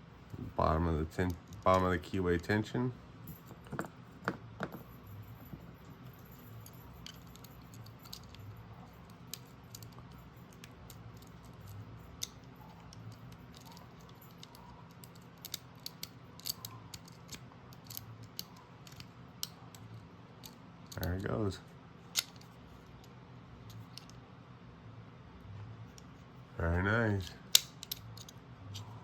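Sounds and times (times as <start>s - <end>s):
lock pick clicking and scraping: 3.4s - 21.2s, 22.1s - 24.2s, 27.4s - 29.0s.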